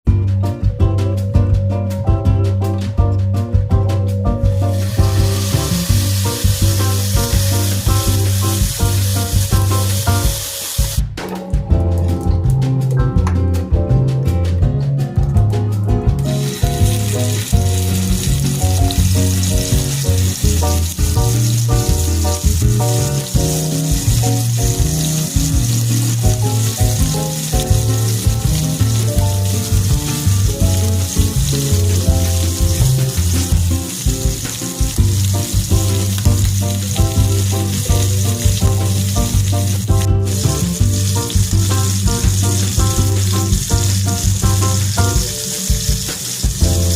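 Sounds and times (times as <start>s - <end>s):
background music with bass: 0.0s - 46.9s
food sizzling in frying pan: 4.5s - 11.0s, 16.2s - 46.9s.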